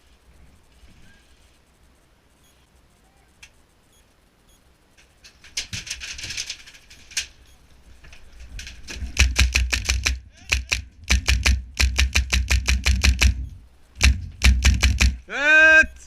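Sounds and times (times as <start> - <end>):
airsoft rifle firing full auto: 9.2 - 13.4.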